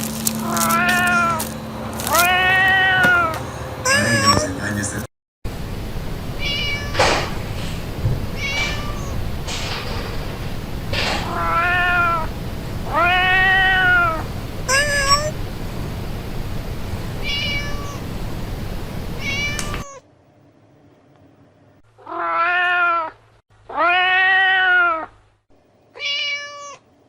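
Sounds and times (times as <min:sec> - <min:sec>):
cat meowing: 0:00.4 - 0:04.6, 0:06.4 - 0:07.5, 0:08.3 - 0:09.3, 0:10.9 - 0:15.4, 0:17.2 - 0:18.1, 0:19.2 - 0:20.0, 0:22.0 - 0:25.2, 0:26.0 - 0:26.8.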